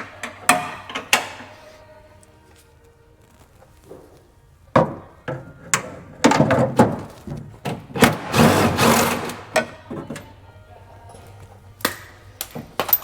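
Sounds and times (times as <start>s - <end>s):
hand tools clanking on metal: 0.0s - 1.7s, 11.1s - 13.0s.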